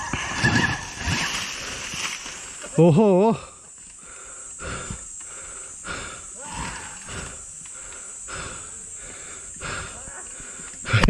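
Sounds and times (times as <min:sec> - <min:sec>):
steady high-pitched hiss: 0:00.0 - 0:11.0
person breathing heavily: 0:03.2 - 0:11.0.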